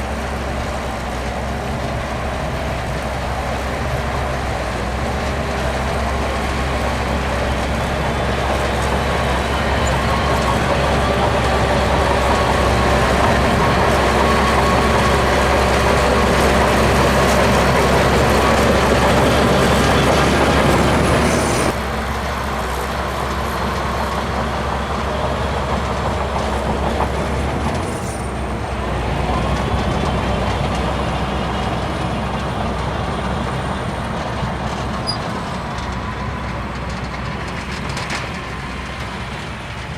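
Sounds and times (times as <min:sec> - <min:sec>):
bulldozer engine running: 0:00.0 - 0:39.9.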